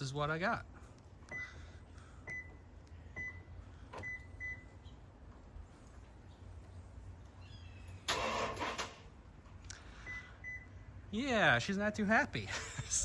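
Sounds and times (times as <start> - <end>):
engine starter cranking: 8.1 - 9.0.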